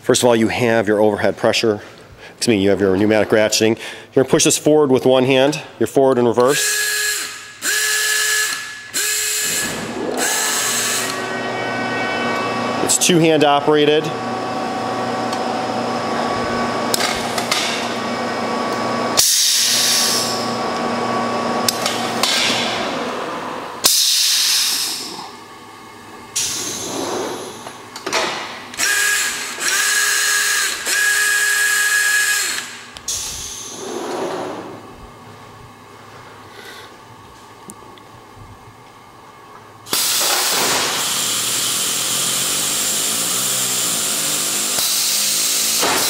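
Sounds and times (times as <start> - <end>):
steady whining tone: 6.4 - 33.8
mechanical drone: 7.1 - 20.6, 39.9 - 46.0
loud pneumatic hissing bursts: 19.2 - 20.4, 23.8 - 25.2, 26.4 - 27.7, 28.8 - 34.1, 39.9 - 46.0.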